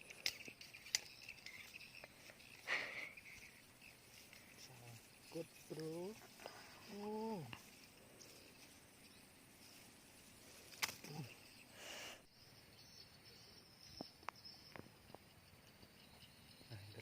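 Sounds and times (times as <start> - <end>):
faint ticks: 0.0 - 8.8, 10.4 - 11.6
insects chirring: 0.0 - 17.0
brief rustle: 10.5 - 11.4.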